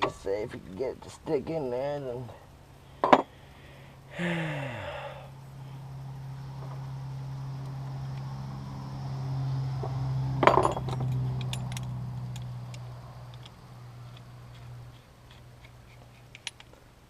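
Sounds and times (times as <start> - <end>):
steady low hum: 0.0 - 17.0
sharp metallic clank: 10.4 - 11.9
metal tools clinking: 10.4 - 16.8.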